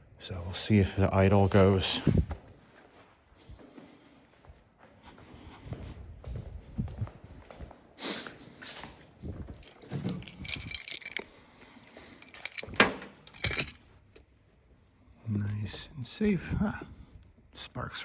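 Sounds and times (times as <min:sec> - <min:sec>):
metal parts clinking: 0:09.5 - 0:14.3.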